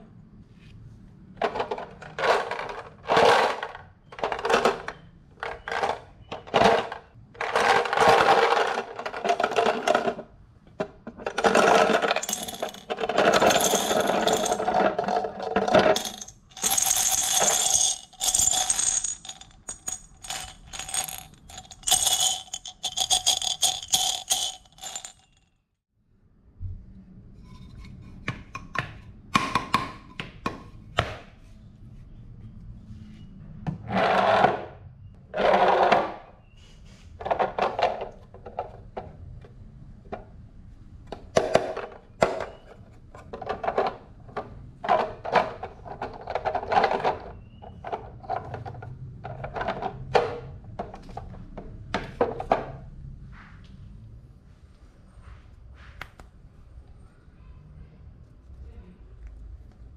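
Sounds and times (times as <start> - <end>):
marbles clacking on wooden run: 11.3 - 25.3.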